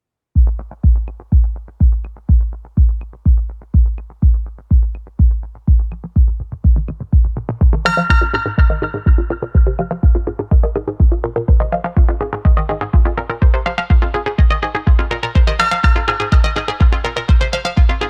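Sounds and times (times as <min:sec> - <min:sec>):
electronic dance music: 0:00.4 - 0:18.0
bright synth chord: 0:07.9 - 0:10.4.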